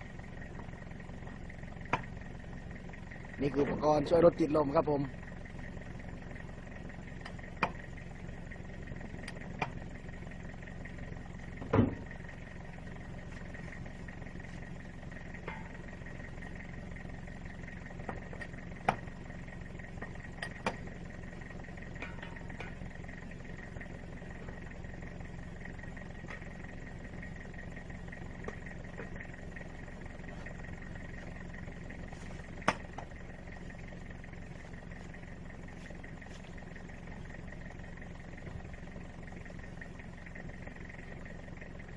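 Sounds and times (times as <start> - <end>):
vehicle engine humming: 0.0 - 41.9
sharp knocks and clicks: 1.9 - 2.1, 18.0 - 19.0, 20.0 - 20.8, 32.6 - 33.1.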